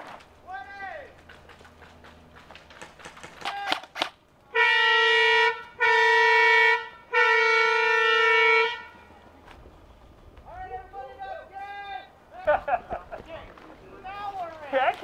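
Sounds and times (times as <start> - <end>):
air horn blasts: 4.5 - 9.1.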